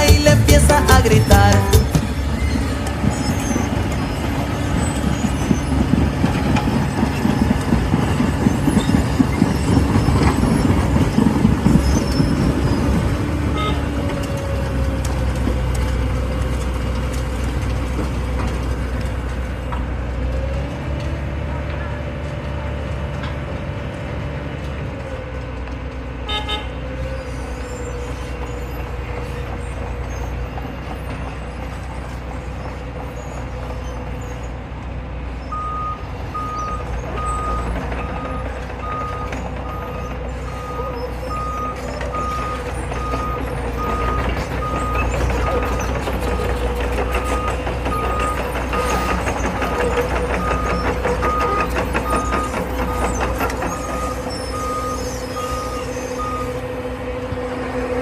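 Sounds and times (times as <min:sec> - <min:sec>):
heavy diesel machinery running: 0:00.0 - 0:58.0
short horn toot: 0:26.3 - 0:26.8
reversing alarm beeping: 0:35.5 - 0:56.8.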